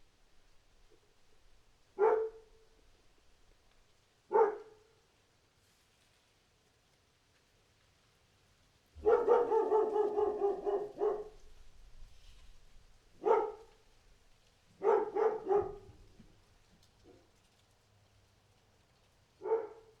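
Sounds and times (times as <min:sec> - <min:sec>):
dog barking: 0:02.0 - 0:02.6, 0:04.3 - 0:04.9, 0:09.0 - 0:11.5, 0:13.2 - 0:13.8, 0:14.8 - 0:16.1, 0:19.4 - 0:20.0.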